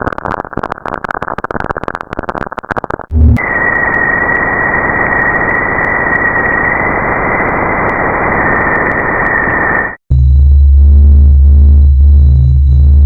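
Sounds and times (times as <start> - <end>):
static-like crackling: 0.0 - 10.0
low hum: 3.1 - 4.3, 10.1 - 13.0
high whistling tone: 3.2 - 10.0
loud steady hiss: 3.2 - 10.0.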